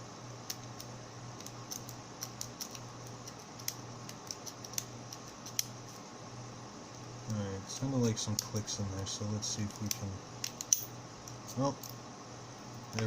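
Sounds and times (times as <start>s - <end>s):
faint low hum: 0.0s - 13.0s
lock pick clicking against pins: 0.4s - 5.7s, 9.7s - 12.0s.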